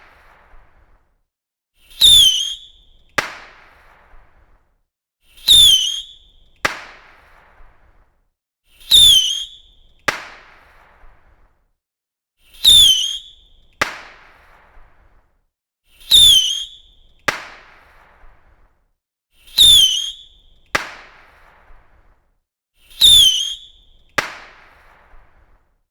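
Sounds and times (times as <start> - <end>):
firework rocket whistling: 1.8 - 3.2, 5.3 - 6.9, 8.7 - 10.4, 12.5 - 14.6, 15.9 - 18.6, 19.4 - 21.8, 22.8 - 25.3.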